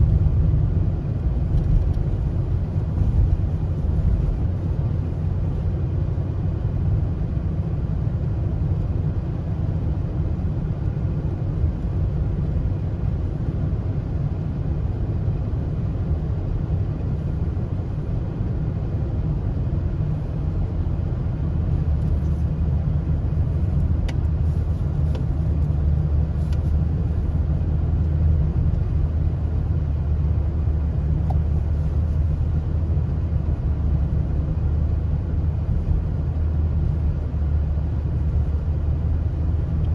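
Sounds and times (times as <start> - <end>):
car road and engine rumble: 0.0 - 39.9.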